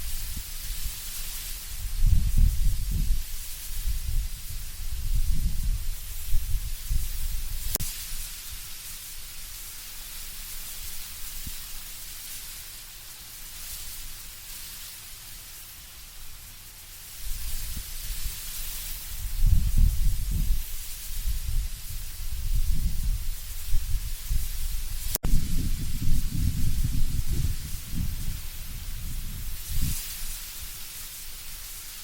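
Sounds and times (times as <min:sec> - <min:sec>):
low rumbling wind gusts: 0:00.0 - 0:07.8, 0:19.1 - 0:30.8
wind rustling dry leaves: 0:00.0 - 0:32.0.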